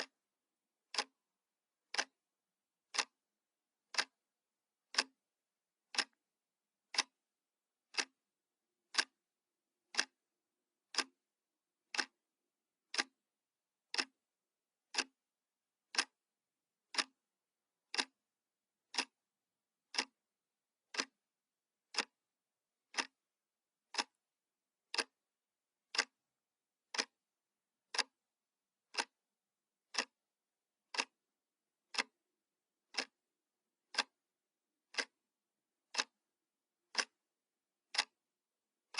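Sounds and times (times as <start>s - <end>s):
clock ticking: 0.9s - 1.2s, 1.9s - 2.2s, 2.9s - 3.2s, 3.9s - 4.2s, 4.9s - 5.2s, 5.9s - 6.2s, 6.9s - 7.2s, 7.9s - 8.2s, 8.9s - 9.2s, 9.9s - 10.2s, 10.9s - 11.2s, 11.9s - 12.2s, 12.9s - 13.2s, 13.9s - 14.2s, 14.9s - 15.2s, 15.9s - 16.2s, 16.8s - 17.2s, 17.9s - 18.2s, 18.9s - 19.2s, 19.9s - 20.2s, 20.9s - 21.2s, 21.9s - 22.2s, 22.9s - 23.2s, 23.9s - 24.2s, 24.9s - 25.2s, 25.9s - 26.3s, 26.9s - 27.2s, 27.9s - 28.2s, 28.9s - 29.2s, 29.9s - 30.2s, 30.9s - 31.2s, 31.9s - 32.2s, 32.9s - 33.2s, 33.9s - 34.2s, 34.9s - 35.2s, 35.9s - 36.2s, 36.9s - 37.2s, 37.9s - 38.2s.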